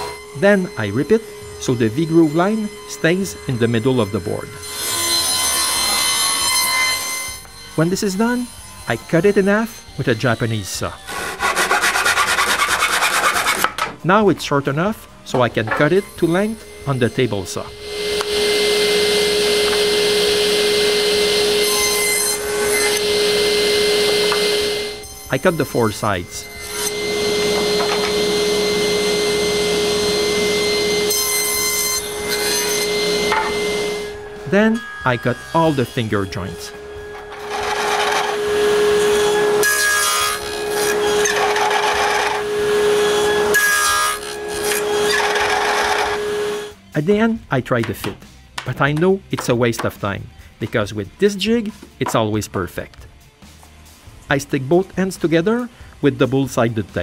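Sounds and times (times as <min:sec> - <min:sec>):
power tool humming: 0:00.0 - 0:13.8, 0:15.1 - 0:46.8
table saw cutting wood: 0:00.0 - 0:46.8.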